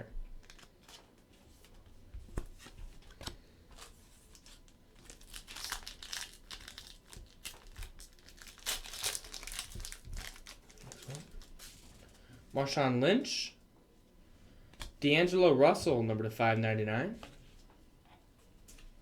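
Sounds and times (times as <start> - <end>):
foil wrapper crinkling and tearing: 0.4 - 1.0, 3.8 - 12.1.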